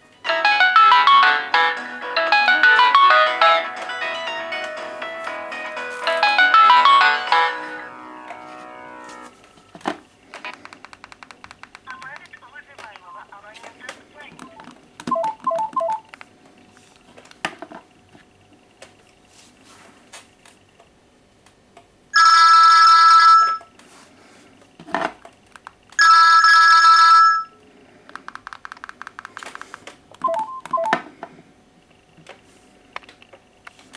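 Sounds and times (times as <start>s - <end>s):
phone ringing: 0.0s - 9.4s, 11.9s - 16.1s, 22.2s - 23.7s, 26.0s - 27.6s, 30.2s - 31.2s
keypad beeps: 14.3s - 16.1s, 30.2s - 31.1s.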